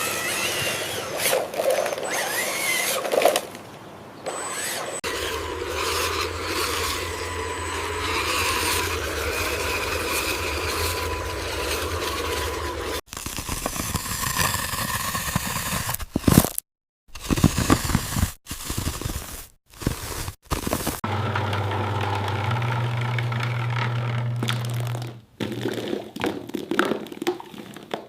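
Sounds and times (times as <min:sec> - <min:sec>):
low motor hum: 0:04.3 - 0:13.0, 0:21.0 - 0:25.2
material scraping and crunching: 0:07.6 - 0:21.0.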